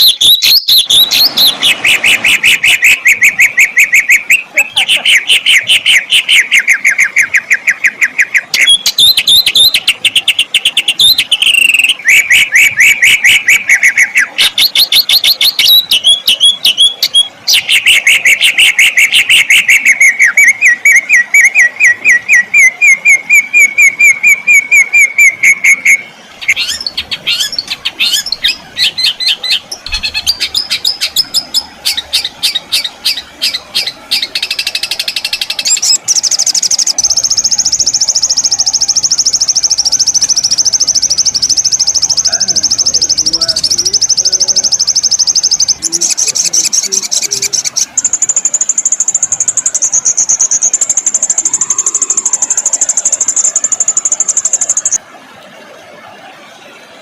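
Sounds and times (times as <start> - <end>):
songbird trilling: 0.0 - 55.0
sharp sweeping bird notes: 23.2 - 55.0.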